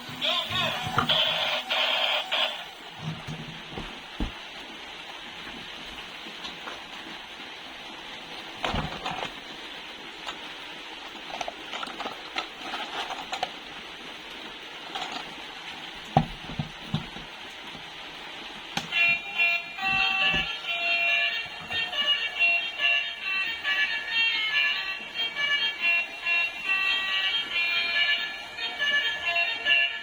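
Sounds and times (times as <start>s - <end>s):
steady hiss: 0.0s - 30.0s
plastic toys clicking: 11.3s - 13.6s
music jingle: 18.9s - 30.0s.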